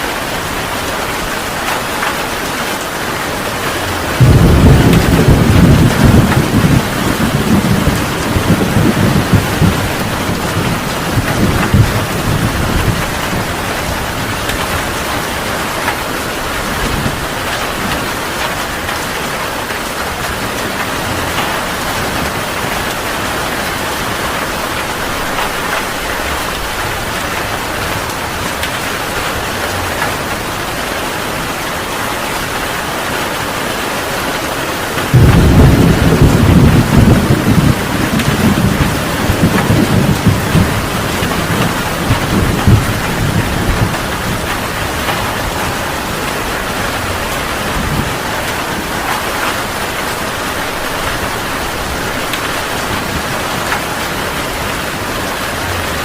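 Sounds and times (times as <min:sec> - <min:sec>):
thunder rumbling: 0:00.0 - 0:32.9, 0:34.9 - 0:56.0
heavy rain: 0:00.0 - 0:56.0
loud thunderclap: 0:03.8 - 0:19.0, 0:35.0 - 0:53.8.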